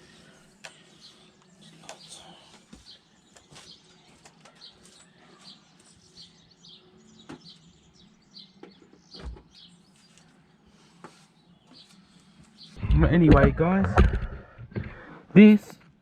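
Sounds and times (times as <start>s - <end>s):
clicks and knocks: 12.8s - 15.0s.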